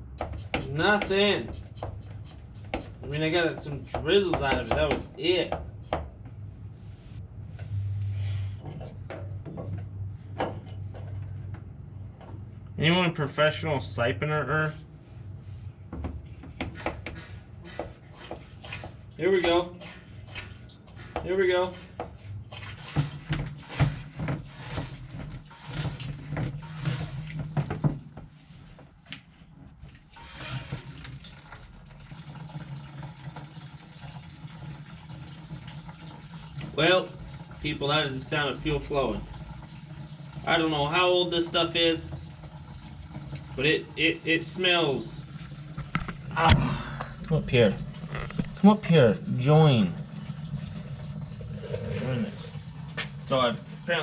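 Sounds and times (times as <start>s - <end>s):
hose knocking and rubbing: 0.0s - 7.8s, 15.8s - 29.4s, 30.2s - 31.1s, 45.4s - 46.4s, 47.2s - 48.6s
fuel gurgling from siphon hose: 19.8s - 28.1s, 29.8s - 54.0s.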